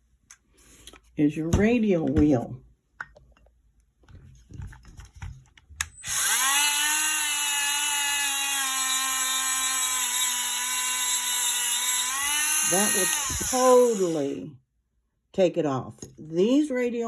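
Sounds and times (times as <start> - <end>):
rotary tool whining: 5.8 - 14.4.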